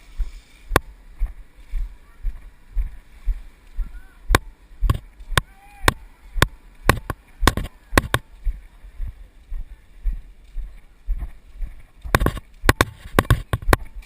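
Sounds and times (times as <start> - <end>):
soft low thumps: 0.0 - 14.0
sharp clicks and knocks: 4.3 - 8.2, 12.0 - 14.0.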